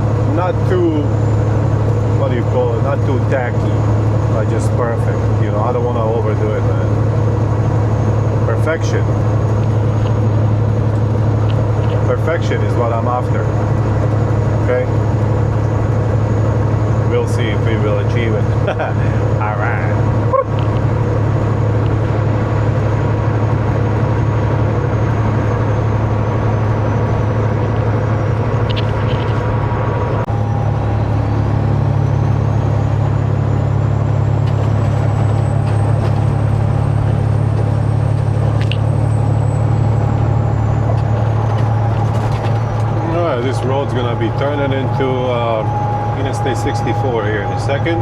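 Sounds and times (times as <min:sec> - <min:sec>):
diesel engine drone: 0:00.0 - 0:48.0
road noise: 0:00.0 - 0:48.0
faint high whine: 0:41.4 - 0:48.0.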